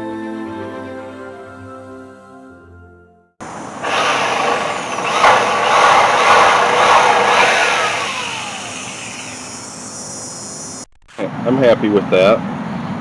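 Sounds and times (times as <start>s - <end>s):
motor running with wavering pitch: 3.4s - 10.9s.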